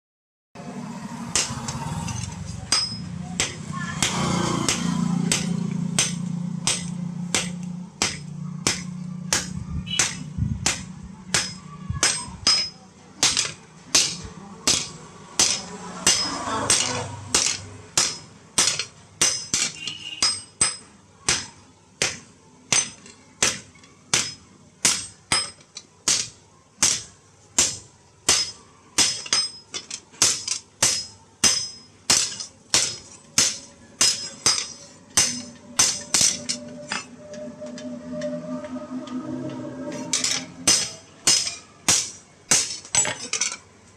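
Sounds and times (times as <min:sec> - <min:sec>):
hammer striking metal on anvil: 0:01.2 - 0:43.6
low hum: 0:34.7 - 0:41.8.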